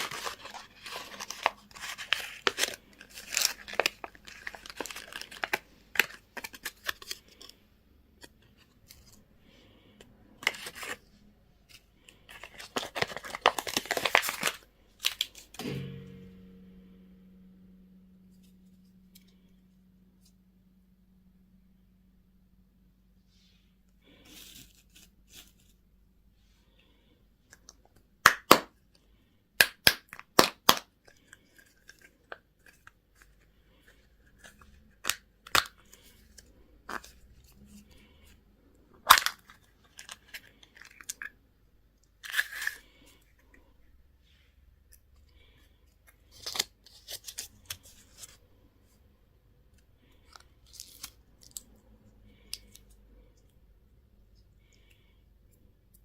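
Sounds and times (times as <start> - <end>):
packaging tearing and crinkling: 0.0 - 7.5, 12.3 - 15.5, 50.6 - 51.7.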